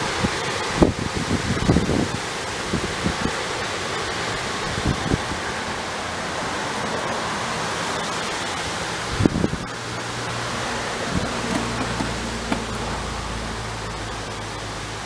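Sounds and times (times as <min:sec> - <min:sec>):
loud steady hiss: 0:00.0 - 0:15.0
low bumps: 0:11.2 - 0:13.6.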